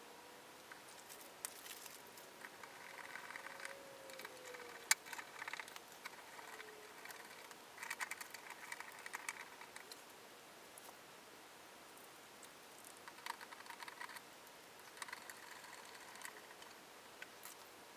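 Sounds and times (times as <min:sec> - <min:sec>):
plastic parts clicking and rattling: 0:01.5 - 0:10.0, 0:14.9 - 0:17.6.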